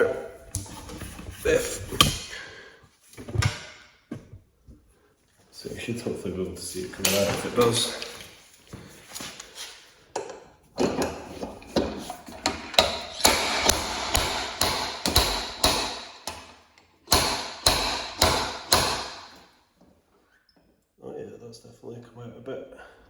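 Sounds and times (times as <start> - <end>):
slide hammer metallic clacks: 11.7 - 19.4.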